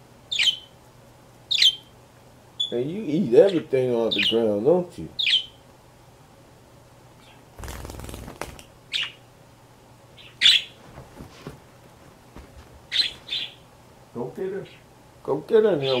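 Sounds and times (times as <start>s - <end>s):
bird wings flapping: 7.6s - 8.7s.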